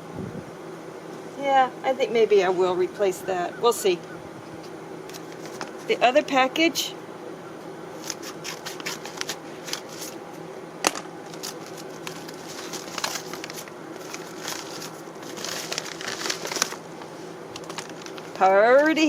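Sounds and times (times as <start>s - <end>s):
packaging rustling and crinkling: 5.1s - 6.0s, 8.0s - 10.2s, 10.9s - 19.0s.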